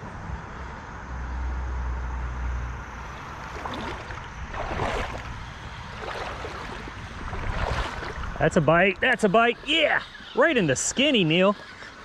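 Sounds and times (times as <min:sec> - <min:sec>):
wind rumbling on microphone: 0:02.8 - 0:09.7
creek water rushing: 0:03.2 - 0:12.0.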